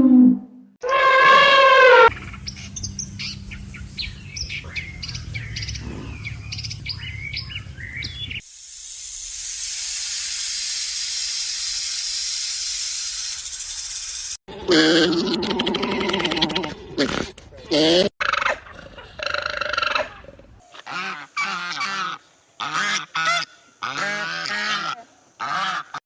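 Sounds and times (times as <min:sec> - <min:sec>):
loud pitched animal call: 0:00.0 - 0:02.4
birds chirping: 0:00.8 - 0:08.5
steady hiss: 0:02.1 - 0:14.4.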